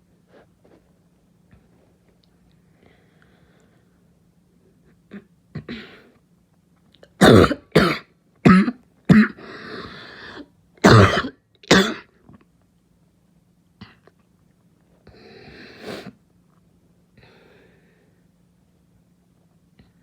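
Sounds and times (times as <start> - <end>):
noisy breath: 2.6 - 4.2, 9.4 - 10.5, 15.0 - 16.2, 17.2 - 18.4
person coughing harshly: 7.2 - 9.4, 10.8 - 12.1.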